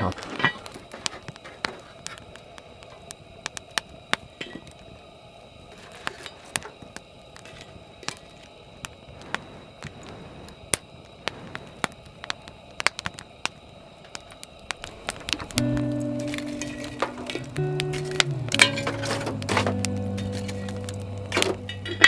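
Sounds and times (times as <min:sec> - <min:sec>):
campfire crackling and popping: 0:00.0 - 0:22.0
music: 0:15.3 - 0:22.0.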